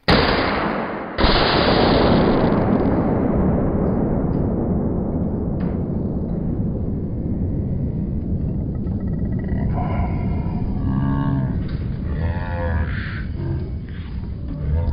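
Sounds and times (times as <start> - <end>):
low rumbling noise: 0.8 - 14.9
cattle mooing: 9.4 - 14.9.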